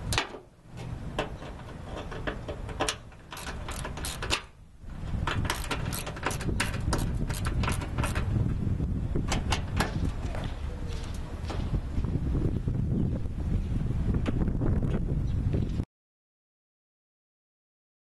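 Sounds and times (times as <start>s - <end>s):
wind rumble on microphone: 0.0s - 15.9s
hand tools clicking on screws: 1.2s - 4.5s, 5.2s - 8.3s.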